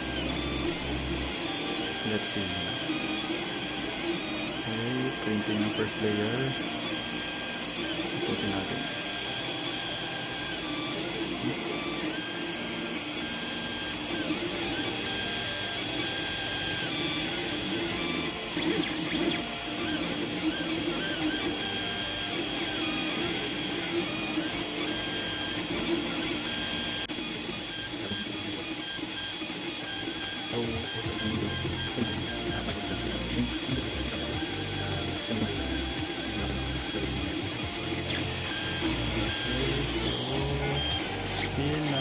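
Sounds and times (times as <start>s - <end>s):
steady printer hum: 0.0s - 42.0s
stepper motors whining: 0.0s - 42.0s.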